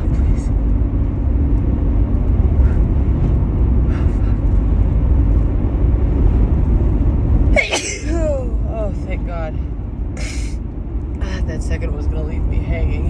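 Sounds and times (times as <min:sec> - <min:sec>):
steady low rumble: 0:00.0 - 0:13.0
person sneezing: 0:07.6 - 0:08.2.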